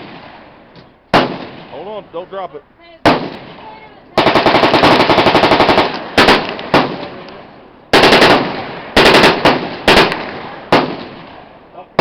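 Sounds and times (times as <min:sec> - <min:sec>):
machine-gun fire in bursts: 0:01.1 - 0:01.8, 0:03.0 - 0:03.6, 0:04.2 - 0:07.2, 0:07.9 - 0:12.0.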